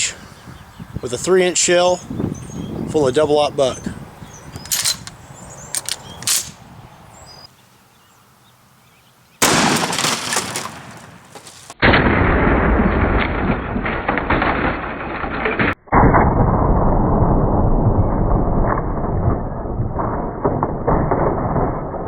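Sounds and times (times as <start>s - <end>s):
sharp clicks: 4.5s - 6.6s
shotgun blast: 9.4s - 11.2s.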